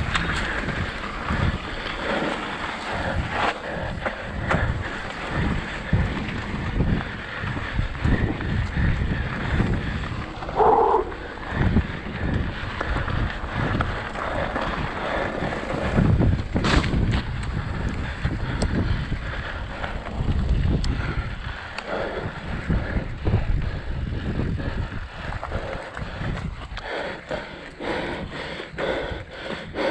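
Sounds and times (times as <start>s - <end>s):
mountain bike rattling on dirt trail: 0.0s - 29.9s
wind buffeting microphone: 0.0s - 29.9s
bike knocking over bumps: 15.8s - 17.6s.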